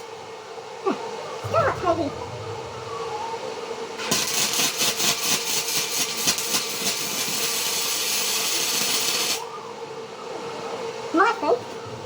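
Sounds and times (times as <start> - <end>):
arc welder crackling sputter: 4.0 - 9.4.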